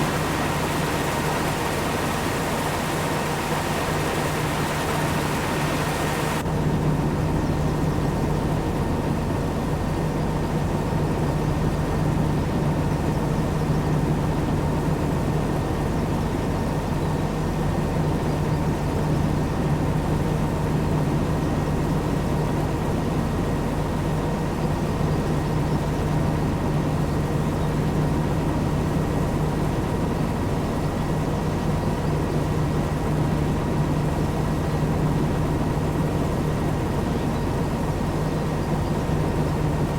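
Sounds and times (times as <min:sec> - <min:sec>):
heavy machine engine humming: 0:00.0 - 0:06.4
high hiss: 0:00.0 - 0:06.4.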